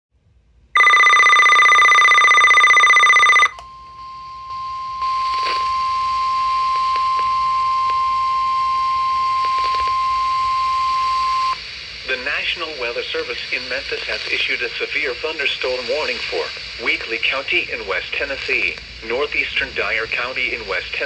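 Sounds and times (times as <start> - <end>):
steady warning alarm tone: 0.8 - 6.7
radio static: 5.0 - 8.1, 9.1 - 21.0.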